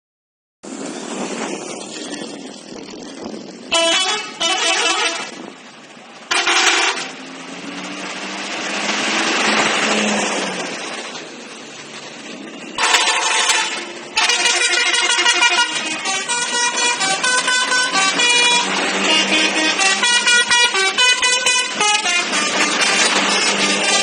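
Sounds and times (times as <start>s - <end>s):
street noise: 0.6s - 24.0s
vehicle engine humming: 0.7s - 24.0s
multi-tone bus horn blasts: 3.7s - 5.4s, 6.3s - 7.2s, 12.8s - 24.0s.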